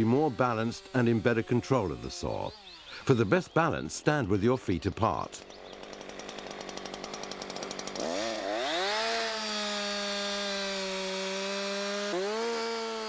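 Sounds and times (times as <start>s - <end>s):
chainsaw sawing into wood: 0.0s - 13.0s.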